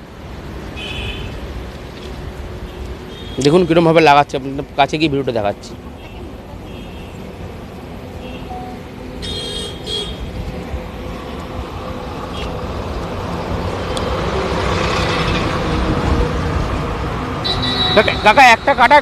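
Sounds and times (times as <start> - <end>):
passing vehicles rumbling: 0.0 - 19.0
vehicle horn toot: 8.2 - 10.2, 17.4 - 18.9.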